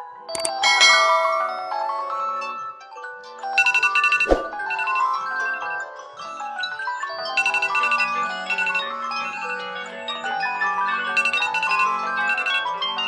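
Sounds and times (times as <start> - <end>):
phone alarm tones chiming: 3.6 - 5.8, 7.4 - 9.6, 11.1 - 13.0.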